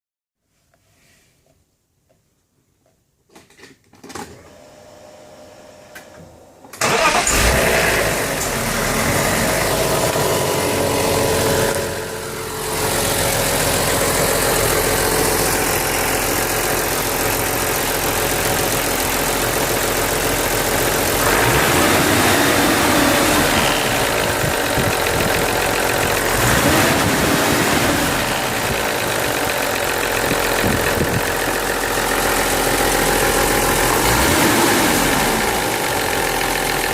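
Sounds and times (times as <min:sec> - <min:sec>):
car engine starting and idling: 0:06.7 - 0:36.9
engine revving: 0:06.8 - 0:14.2, 0:20.8 - 0:31.2, 0:32.2 - 0:36.2
engine rattle at low rpm: 0:06.9 - 0:36.9.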